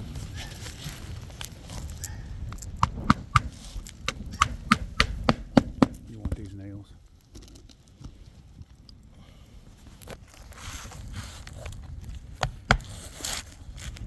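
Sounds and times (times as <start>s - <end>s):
sharp knocks on roof: 2.8s - 6.1s, 12.4s - 13.2s
shingles scraping and rustling: 10.3s - 14.0s.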